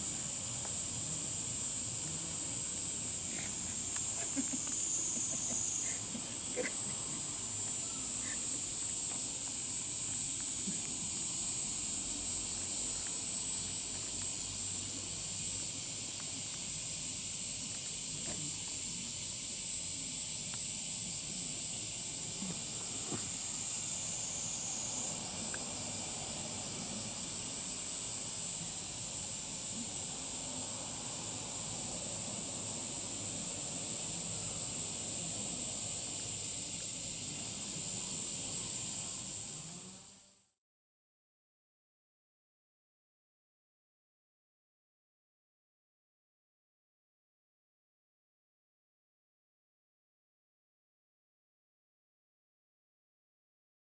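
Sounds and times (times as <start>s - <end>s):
high-pitched insect drone: 0.0s - 40.4s.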